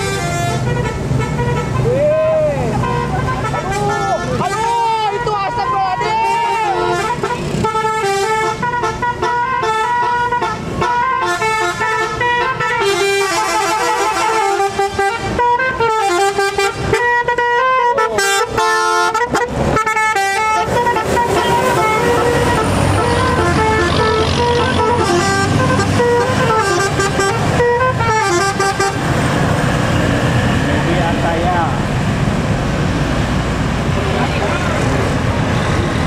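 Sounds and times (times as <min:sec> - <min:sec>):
bus musical horn playing a tune: 0:00.0 - 0:02.0, 0:02.6 - 0:29.1.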